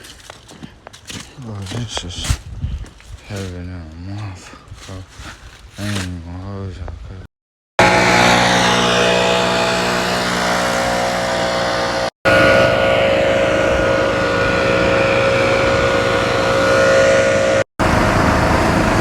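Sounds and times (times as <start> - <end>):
small gas engine running: 7.8 - 19.0.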